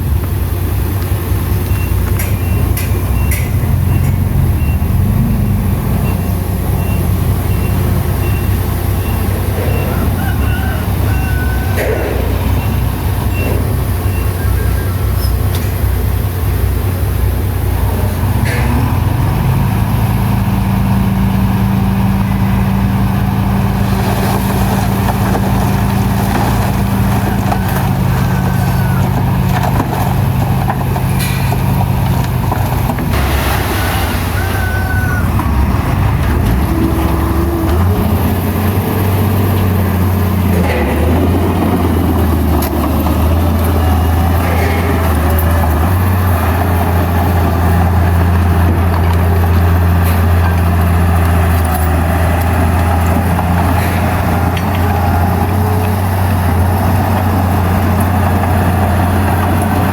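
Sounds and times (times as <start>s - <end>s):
heavy diesel machinery running: 0.0s - 59.9s
high squeaks: 6.1s - 15.8s.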